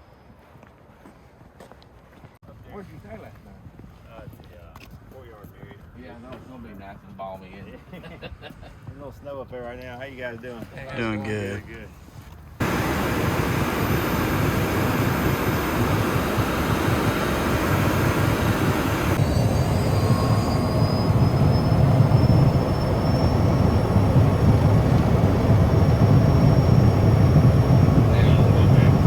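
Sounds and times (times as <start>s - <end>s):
airplane engine rumble: 12.6s - 29.0s
faint high whine: 12.6s - 29.0s.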